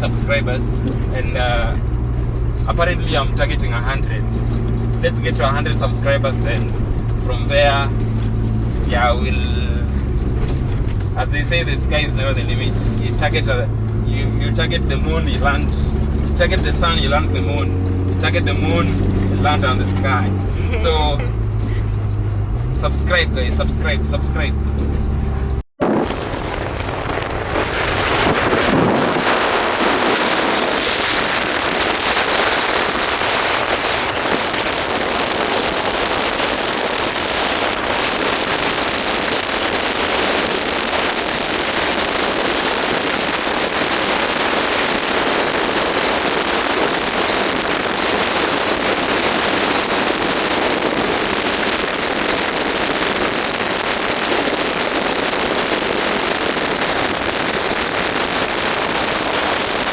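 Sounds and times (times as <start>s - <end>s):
wind noise on microphone: 24.6s - 59.9s.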